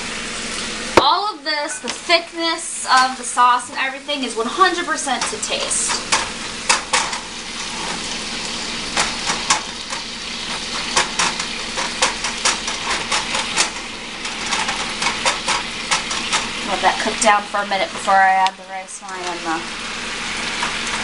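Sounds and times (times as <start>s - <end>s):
sauce sizzling in a pan: 0.0s - 21.0s
utensil scraping a pan: 4.3s - 18.3s.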